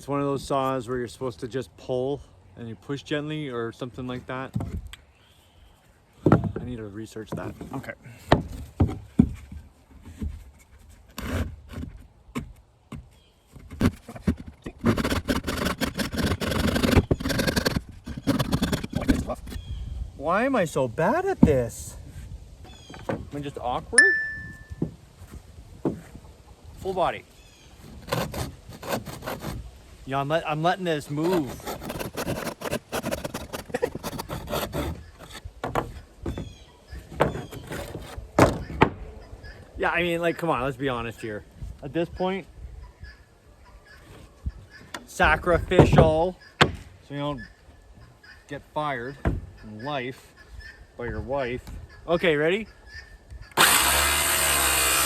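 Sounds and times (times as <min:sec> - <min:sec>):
knocks and short scrapes: 0:06.2 - 0:19.7, 0:27.8 - 0:29.6, 0:30.9 - 0:39.0
handsaw cutting wood: 0:11.1 - 0:11.9, 0:13.8 - 0:19.5, 0:27.8 - 0:29.6, 0:31.0 - 0:35.9, 0:37.2 - 0:38.6, 0:53.6 - 0:55.0.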